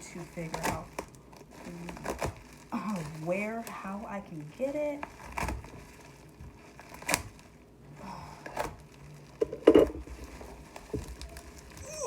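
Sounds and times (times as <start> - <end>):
bubble wrap rustling: 0.0 - 12.0.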